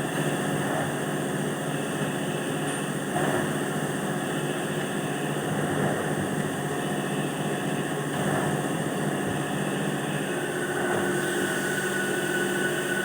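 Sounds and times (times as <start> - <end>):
machinery humming: 8.6 - 13.0.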